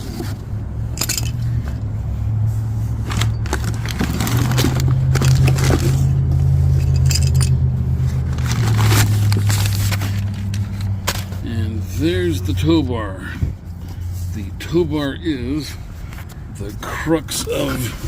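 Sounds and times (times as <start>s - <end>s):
metal hardware scraping and clinking: 0.0s - 1.8s, 3.0s - 12.6s
low engine hum: 0.0s - 18.0s.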